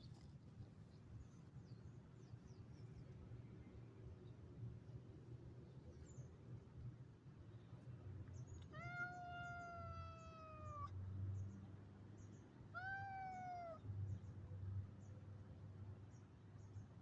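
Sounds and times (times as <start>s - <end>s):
cat meowing: 8.7s - 11.0s, 12.8s - 13.8s.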